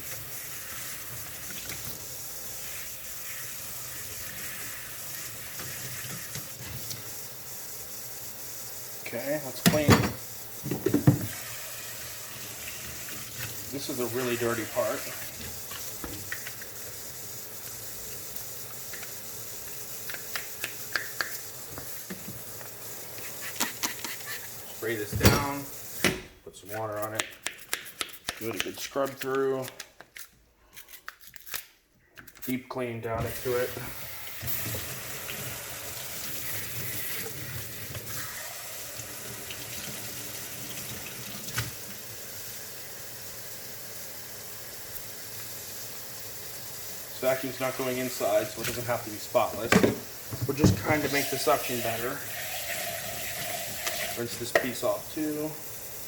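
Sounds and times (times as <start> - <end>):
tap water running into sink: 9.6 - 26.1, 33.2 - 42.1, 43.6 - 55.8.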